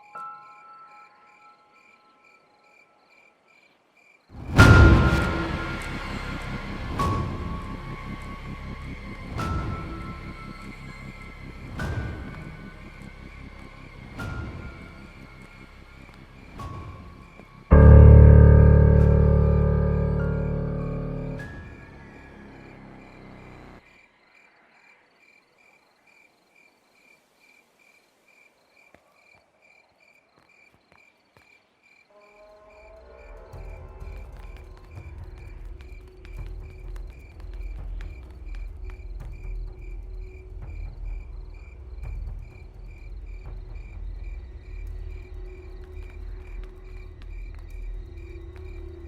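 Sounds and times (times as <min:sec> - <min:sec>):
crickets chirping: 0:00.0 - 0:49.0
low music: 0:04.4 - 0:23.8
steady low rumble: 0:04.4 - 0:23.8.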